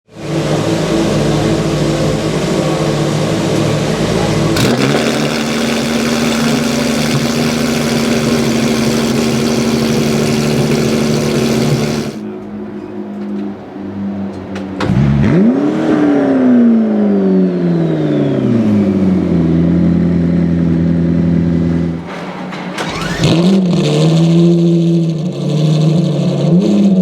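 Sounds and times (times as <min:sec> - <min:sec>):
car engine at high revs: 0:00.1 - 0:12.2, 0:14.8 - 0:22.0, 0:22.8 - 0:27.0
sharp engine crack: 0:03.5 - 0:12.2.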